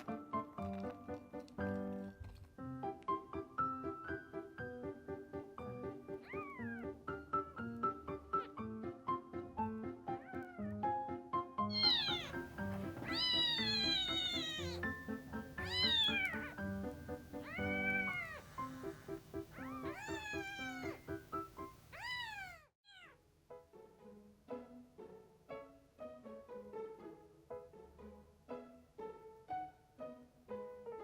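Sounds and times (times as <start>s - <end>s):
light background music: 0.0s - 22.4s, 23.3s - 31.0s
kitten meowing: 6.1s - 7.0s, 11.7s - 21.2s, 21.9s - 23.2s.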